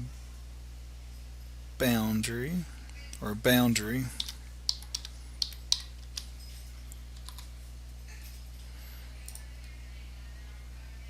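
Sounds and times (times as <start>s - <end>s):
steady low hum: 0.0s - 11.0s
keyboard keystrokes: 4.2s - 6.3s, 7.2s - 7.5s.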